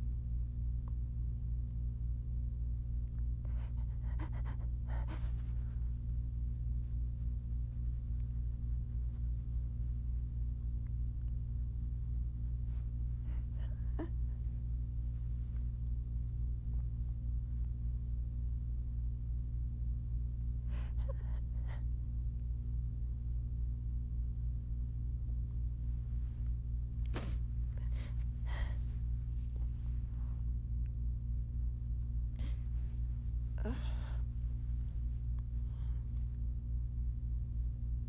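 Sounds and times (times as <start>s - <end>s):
steady low hum: 0.0s - 38.0s
person sneezing: 27.1s - 28.8s
person gasping: 27.2s - 28.9s, 33.6s - 34.4s.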